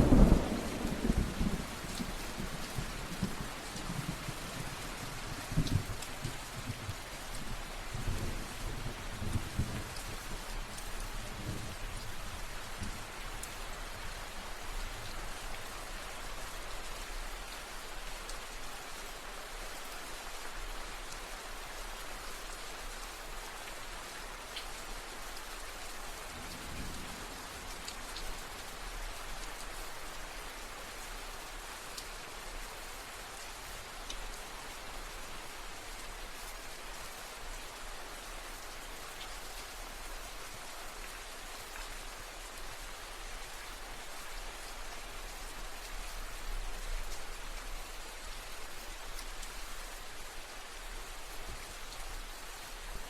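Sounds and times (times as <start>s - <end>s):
steady rain falling: 0.0s - 53.0s
raindrop ticks: 5.4s - 8.3s, 12.7s - 13.6s, 24.5s - 24.8s, 34.0s - 34.3s, 48.7s - 49.8s.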